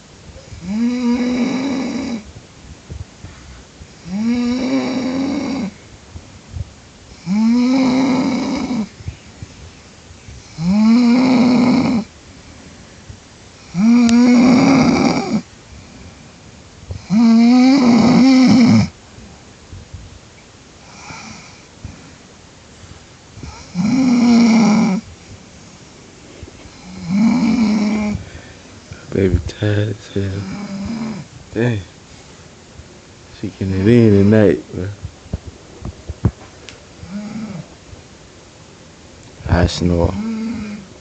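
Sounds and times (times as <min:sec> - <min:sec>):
woman snoring loudly: 0:00.4 - 0:02.2, 0:04.0 - 0:05.8, 0:07.1 - 0:09.0, 0:10.4 - 0:12.1, 0:13.6 - 0:15.5, 0:16.9 - 0:18.9, 0:20.8 - 0:21.6, 0:23.4 - 0:25.0, 0:26.7 - 0:28.2, 0:30.4 - 0:31.3, 0:37.0 - 0:37.7, 0:40.1 - 0:40.9.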